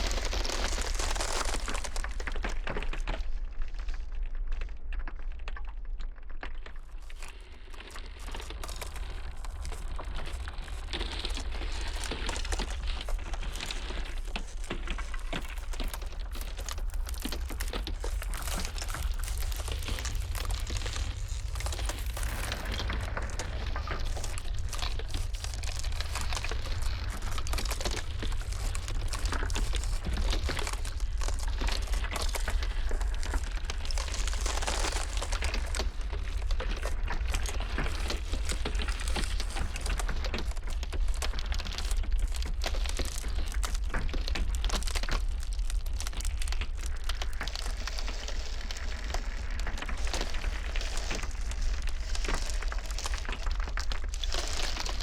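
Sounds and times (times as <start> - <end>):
ice cracking: 0.0 - 55.0
steady low rumble: 8.8 - 41.2.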